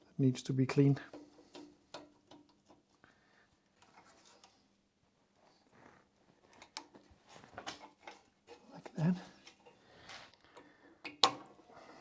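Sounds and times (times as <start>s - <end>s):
faint scraping of tools: 3.8s - 4.7s.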